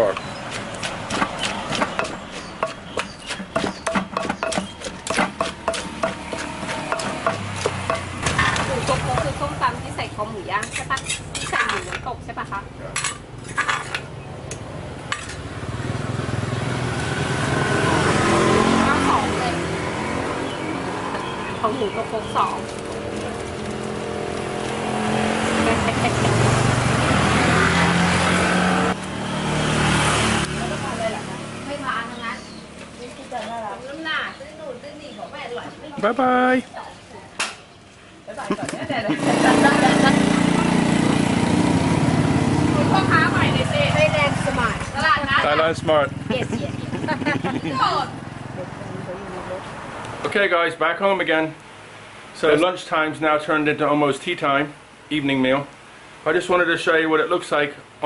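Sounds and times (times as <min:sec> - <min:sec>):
pestle knocking in a mortar: 0:00.2 - 0:09.3
vehicle engine running: 0:39.1 - 0:49.5.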